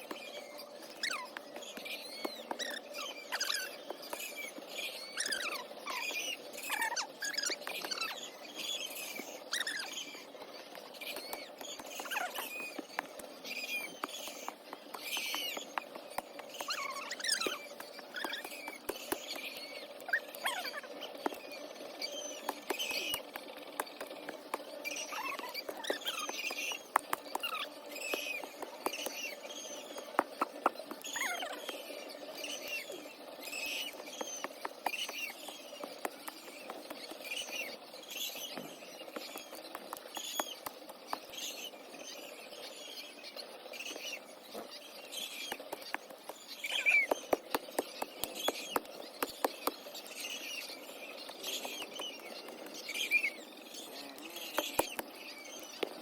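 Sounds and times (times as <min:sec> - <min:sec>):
chicks cheeping: 0:00.1 - 0:56.0
sharp clicks and taps: 0:25.7 - 0:29.2.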